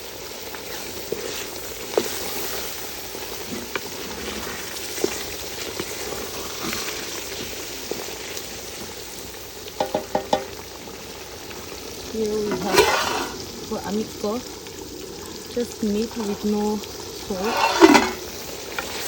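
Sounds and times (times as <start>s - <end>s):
food sizzling in a pot: 0.0s - 19.0s.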